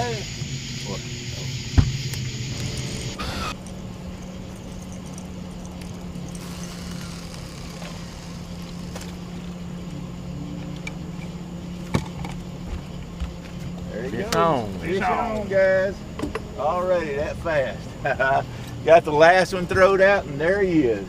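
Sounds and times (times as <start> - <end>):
small motor humming: 0.0 - 13.3.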